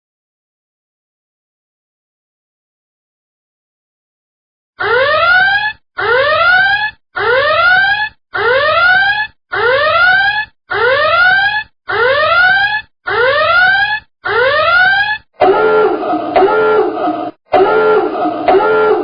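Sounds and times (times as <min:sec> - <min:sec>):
electronic alarm whooping: 0:14.3 - 0:19.0.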